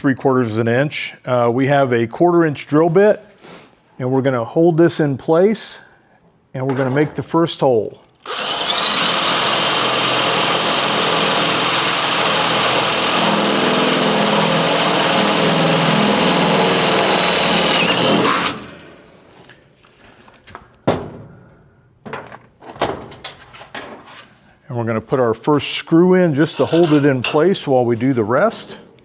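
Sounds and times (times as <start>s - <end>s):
electric drill boring sheet metal: 8.2s - 18.8s.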